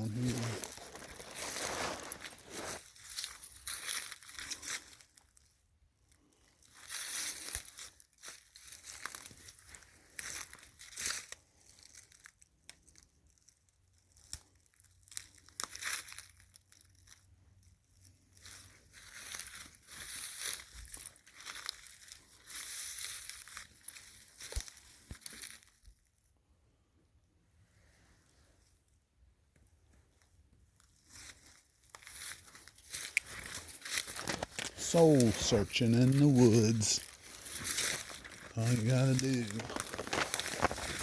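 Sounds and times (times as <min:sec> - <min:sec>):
footsteps crunching through dry leaves: 0:00.0 - 0:04.2, 0:32.2 - 0:41.0.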